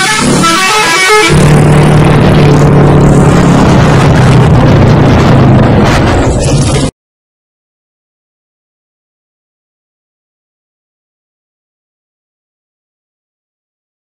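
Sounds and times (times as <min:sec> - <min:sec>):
multi-tone musical bus horn: 0:00.0 - 0:01.8
vehicle noise with low hum: 0:00.0 - 0:06.9.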